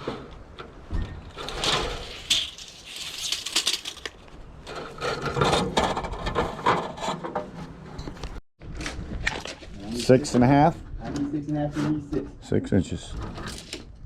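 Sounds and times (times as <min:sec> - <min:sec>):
light sheet metal clatter and scrapes: 0:01.0 - 0:08.1.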